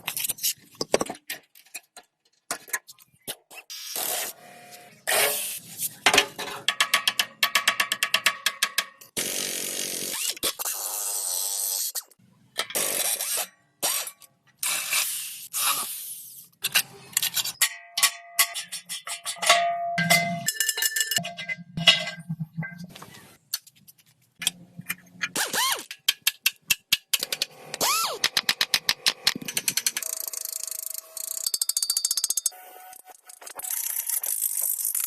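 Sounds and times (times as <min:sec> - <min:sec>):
ringing metal clanks: 0:17.6 - 0:22.9
sharp metal clanks: 0:17.6 - 0:22.9.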